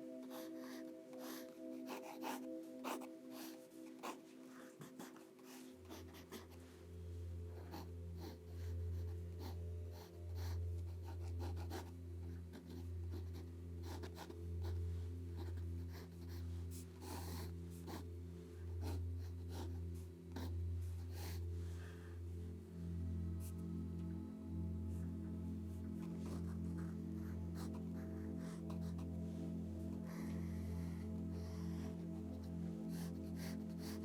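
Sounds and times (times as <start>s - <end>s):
pencil strokes scratching paper: 0.0s - 6.7s, 12.5s - 14.8s, 15.4s - 18.1s, 24.9s - 34.0s
pulsing low hum: 14.4s - 34.0s.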